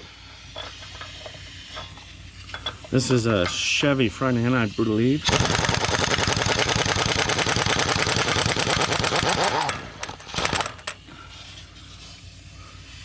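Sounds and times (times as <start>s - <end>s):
air impact wrench hammering: 5.2s - 11.4s.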